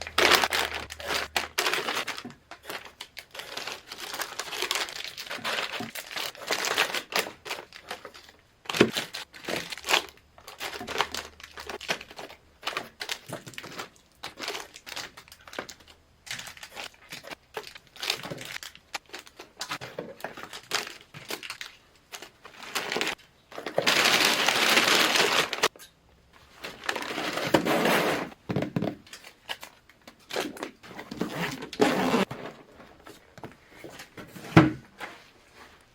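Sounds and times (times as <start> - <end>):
plastic wrappers crinkling: 0.0 - 25.7, 26.5 - 27.6.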